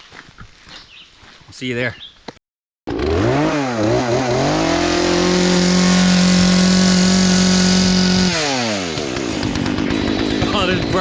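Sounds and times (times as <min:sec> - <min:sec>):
chainsaw revving: 0:02.9 - 0:11.0.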